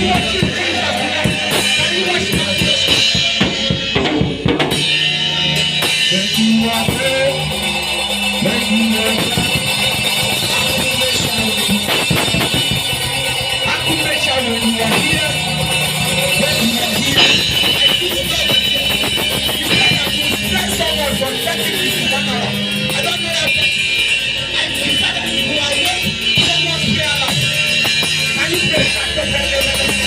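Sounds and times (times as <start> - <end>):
band playing worship music: 0.0 - 30.0
bass drum and snare hits: 9.0 - 13.5, 16.2 - 21.8.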